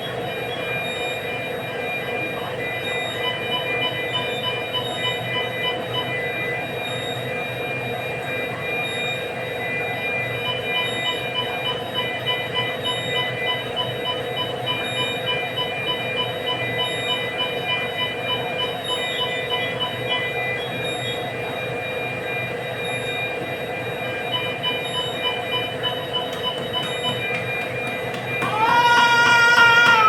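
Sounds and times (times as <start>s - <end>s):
electrical hum: 0.0s - 30.0s
equipment alarm beeping: 0.0s - 30.0s.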